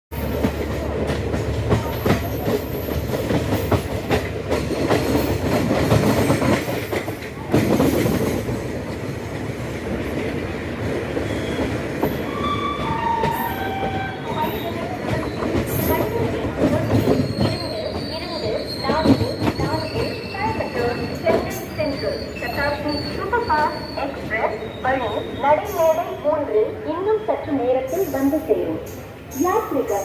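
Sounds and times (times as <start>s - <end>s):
train rumbling on rails: 0.1s - 30.0s
train brakes squealing: 11.2s - 30.0s.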